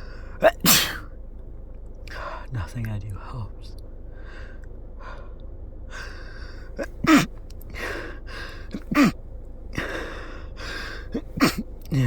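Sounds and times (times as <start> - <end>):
woman sneezing: 0.4 - 1.0, 6.8 - 7.3, 8.8 - 9.2, 11.1 - 12.0
sharp gasping inhales: 5.9 - 9.1, 9.8 - 11.2.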